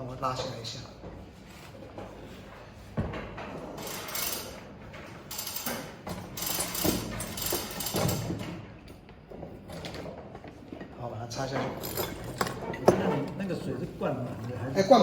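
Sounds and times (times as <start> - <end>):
equipment knocks and rustling: 9.3 - 13.7.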